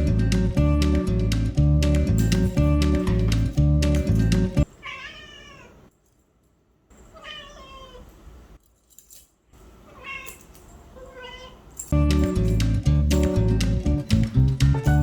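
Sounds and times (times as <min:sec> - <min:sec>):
guitar music: 0:00.0 - 0:04.7, 0:11.9 - 0:15.0
cat meowing: 0:04.8 - 0:05.9, 0:07.1 - 0:08.1, 0:09.9 - 0:11.7.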